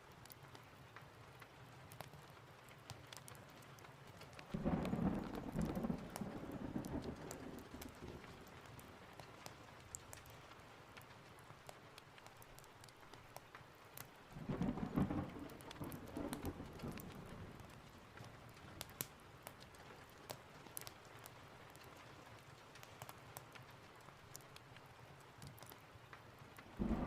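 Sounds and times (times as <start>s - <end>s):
sharp ticks and crackles: 0.0s - 27.0s
steady rain: 0.0s - 27.0s
thunder rolling: 4.6s - 8.3s, 26.8s - 27.0s.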